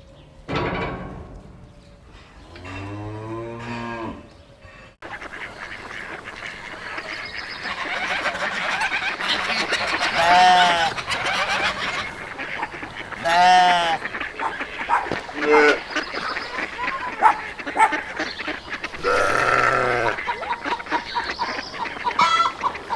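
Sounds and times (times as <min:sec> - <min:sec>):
cow mooing: 0:02.4 - 0:04.3, 0:10.2 - 0:11.0, 0:13.2 - 0:15.8, 0:18.9 - 0:20.2
geese chattering: 0:04.2 - 0:22.9
goose honk: 0:05.0 - 0:22.9.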